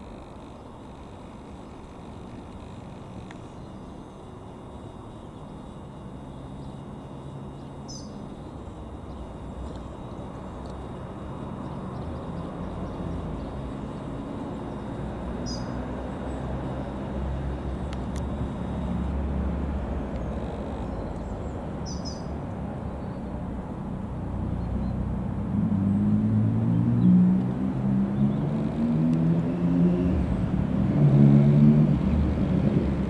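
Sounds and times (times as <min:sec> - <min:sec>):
distant engine droning: 0:00.0 - 0:33.0
bird chirps: 0:07.6 - 0:08.2, 0:15.4 - 0:16.4, 0:20.8 - 0:22.3.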